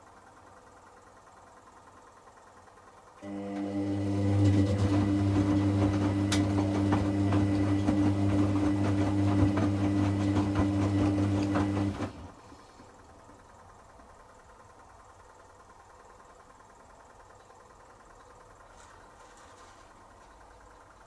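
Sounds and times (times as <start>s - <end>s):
washing machine motor humming: 1.8s - 18.6s
water and laundry sloshing: 3.6s - 12.8s.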